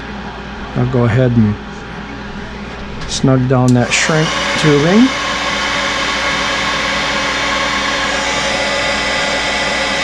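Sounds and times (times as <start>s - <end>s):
heat gun blowing hot air: 3.8s - 10.0s.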